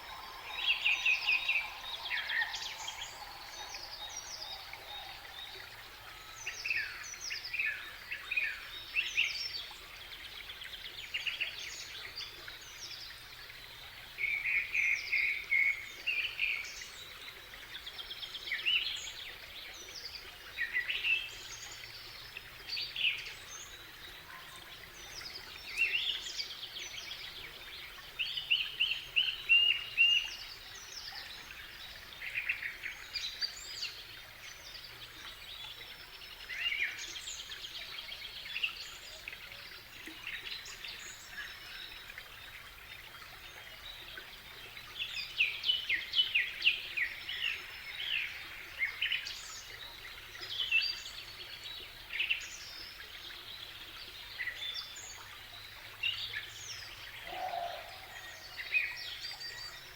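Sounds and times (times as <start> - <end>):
steady faint hiss: 0.0 - 13.6
birds singing and chirping: 56.0 - 59.9.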